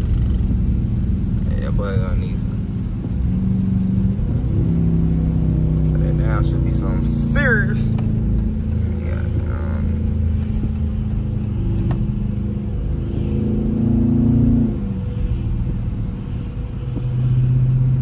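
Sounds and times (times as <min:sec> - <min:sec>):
car engine accelerating: 0:00.0 - 0:18.0
low steady engine note: 0:00.0 - 0:18.0.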